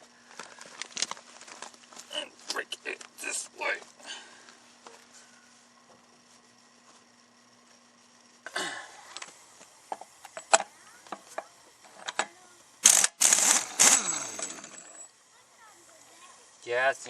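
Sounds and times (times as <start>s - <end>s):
impact wrench bursts: 12.0s - 15.1s.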